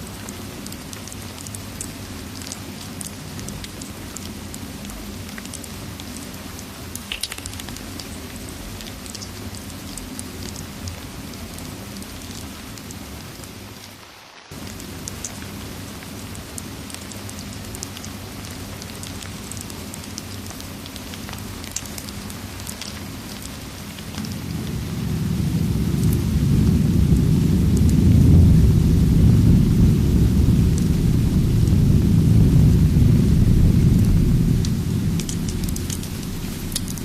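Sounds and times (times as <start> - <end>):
steady rain: 0.0 - 37.0
wood fire crackling: 14.5 - 37.0
low rumble of thunder: 23.4 - 37.0.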